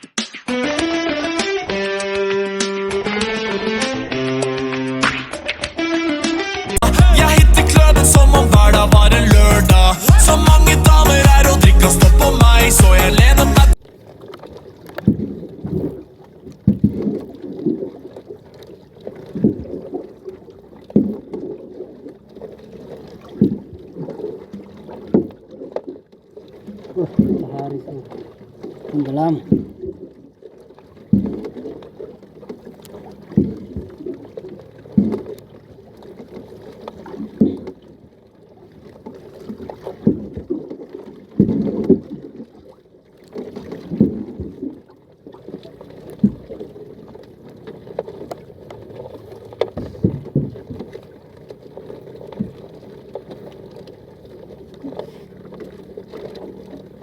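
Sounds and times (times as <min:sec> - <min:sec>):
water knocking against boat hull: 0:49.5 - 0:51.6.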